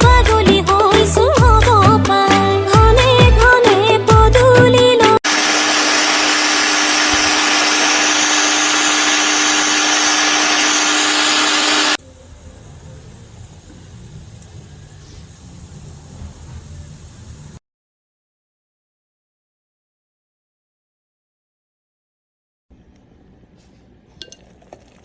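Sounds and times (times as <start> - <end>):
pressure washer spraying: 5.3 - 17.6.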